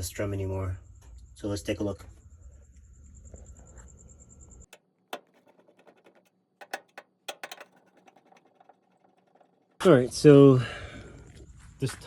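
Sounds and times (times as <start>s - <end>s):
clicks and knocks: 4.7s - 9.9s.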